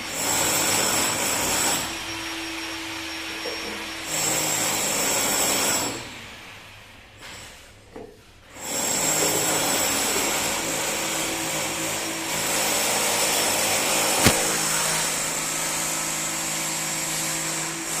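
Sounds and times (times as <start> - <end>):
sharp click: 14.2 - 14.5.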